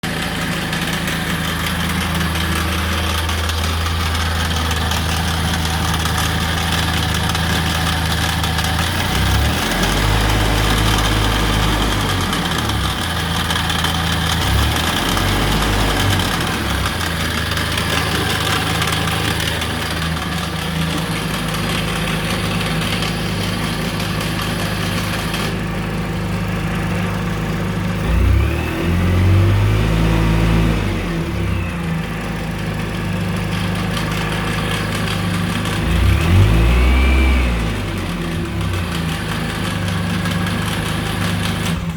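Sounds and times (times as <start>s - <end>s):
scooter engine drone: 0.0s - 41.9s.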